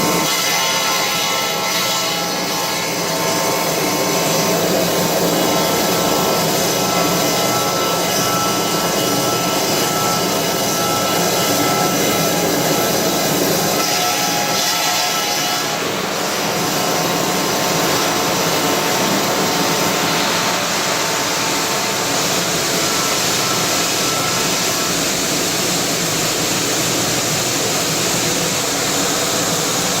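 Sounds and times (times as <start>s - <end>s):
stone router grinding stone: 0.0s - 30.0s.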